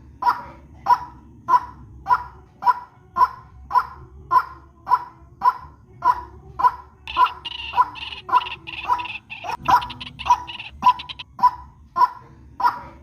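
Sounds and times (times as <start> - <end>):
bird harsh croaking call: 7.1 - 11.2
rapid high chattering: 7.1 - 11.2.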